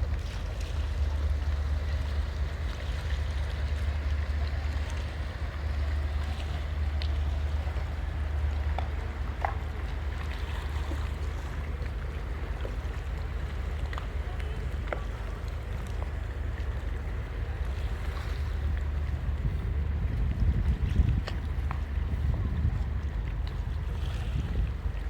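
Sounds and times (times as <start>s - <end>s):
boat engine rumble: 0.0s - 25.0s
water washing: 0.0s - 25.0s
faint clicks: 12.6s - 19.5s
wind noise: 18.6s - 25.0s.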